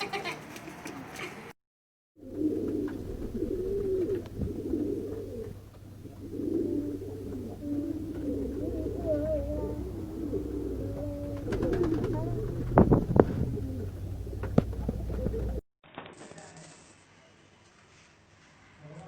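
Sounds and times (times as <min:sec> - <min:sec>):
pigeons cooing: 0:02.2 - 0:15.6
steady low hum: 0:02.2 - 0:15.6.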